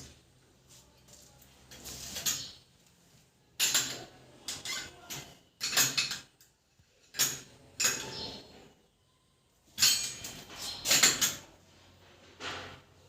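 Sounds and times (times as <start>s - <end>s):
scraping on metal fittings: 1.6s - 2.6s.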